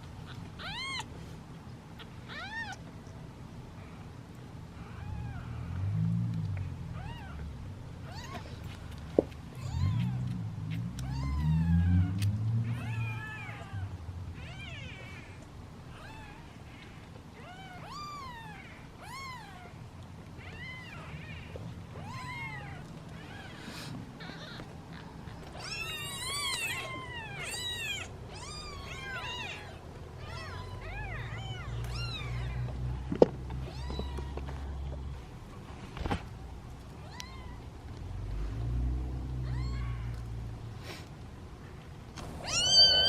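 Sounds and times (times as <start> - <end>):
kittens meowing: 0.2 - 1.1, 2.0 - 2.8, 4.8 - 5.8, 6.9 - 8.6, 9.5 - 10.3, 11.0 - 19.8, 20.4 - 34.5, 37.0 - 37.6, 39.4 - 40.2, 42.2 - 43.0.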